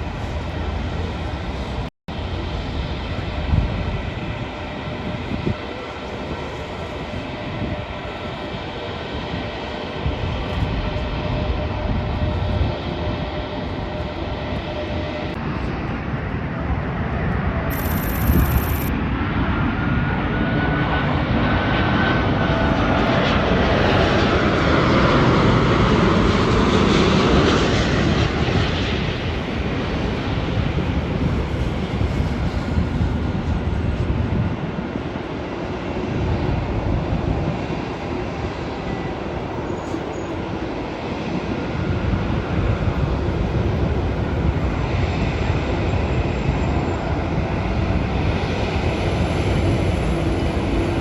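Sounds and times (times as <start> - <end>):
jet plane flying past: 10.7 - 51.0
steady jet whine: 17.4 - 19.0.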